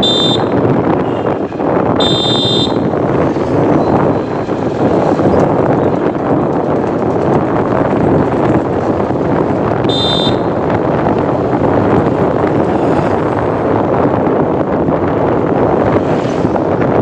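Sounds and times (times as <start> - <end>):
passenger train running: 2.8 - 9.8, 10.5 - 13.9.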